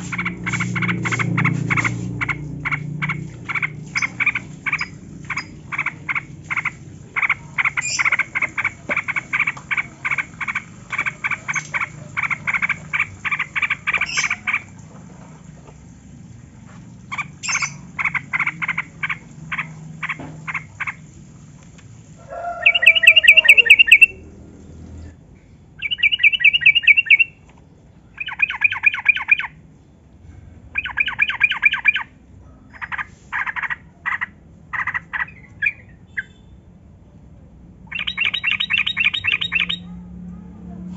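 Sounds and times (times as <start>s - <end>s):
bird fast trills: 0.0s - 14.7s, 22.4s - 24.2s, 25.8s - 27.4s, 37.9s - 39.9s
bird chattering song: 0.0s - 14.8s, 17.1s - 21.2s, 22.6s - 24.2s, 25.8s - 27.4s, 28.1s - 29.6s, 30.8s - 36.6s, 37.9s - 40.0s.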